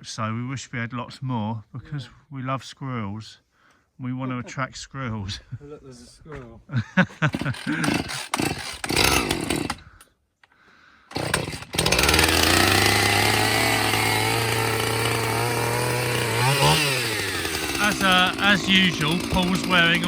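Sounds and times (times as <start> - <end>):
chainsaw running: 7.2 - 9.9, 11.1 - 20.0.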